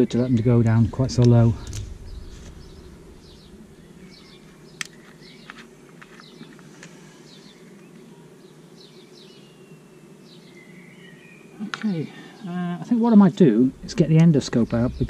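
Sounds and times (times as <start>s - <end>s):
steady low buzz: 0.0s - 5.4s, 13.6s - 15.0s
small birds chirping: 0.0s - 15.0s.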